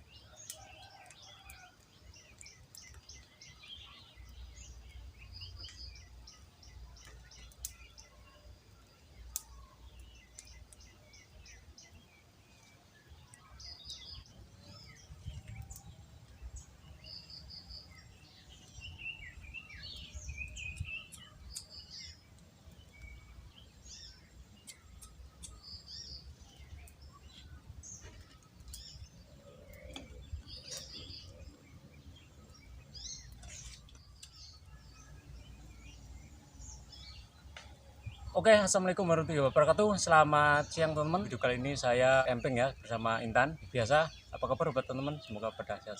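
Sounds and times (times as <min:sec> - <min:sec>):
birds chirping: 0:00.0 - 0:45.9.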